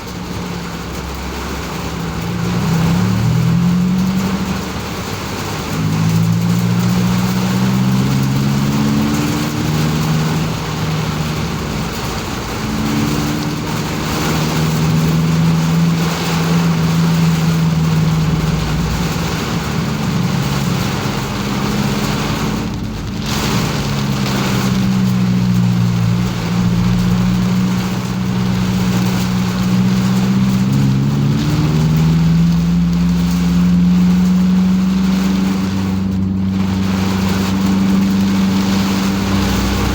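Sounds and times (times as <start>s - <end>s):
car engine accelerating and shifting: 0.0s - 39.9s
rain and tyres on wet road: 0.0s - 39.9s.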